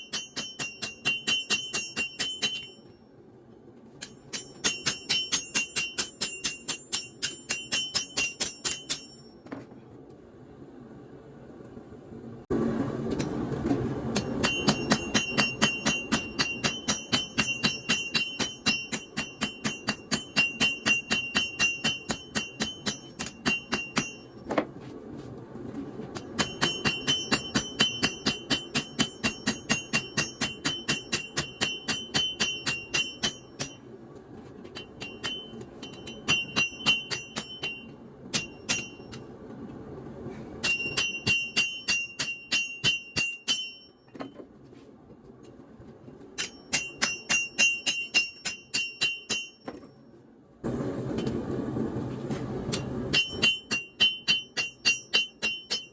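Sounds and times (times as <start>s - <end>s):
hammer blows on an anvil: 0.0s - 3.0s, 4.0s - 9.6s, 14.1s - 24.6s, 26.2s - 34.0s, 34.8s - 39.3s, 40.6s - 44.3s, 46.4s - 49.9s, 52.7s - 55.9s.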